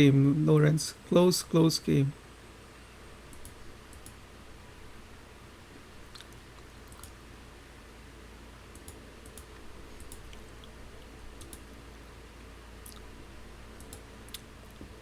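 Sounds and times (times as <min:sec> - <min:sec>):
steady low hum: 0:00.0 - 0:15.0
small clicks: 0:08.7 - 0:10.4, 0:13.8 - 0:14.4.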